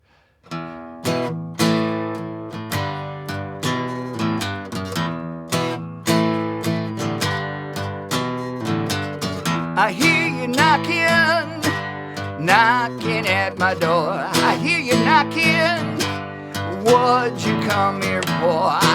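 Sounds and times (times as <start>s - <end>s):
acoustic guitar strumming: 0.4s - 18.9s
person singing: 9.8s - 18.9s.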